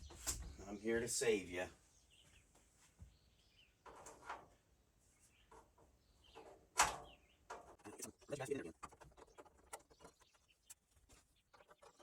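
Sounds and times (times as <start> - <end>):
bird chirping: 0.0 - 3.9, 4.5 - 12.0
rustling and scraping: 3.8 - 12.0.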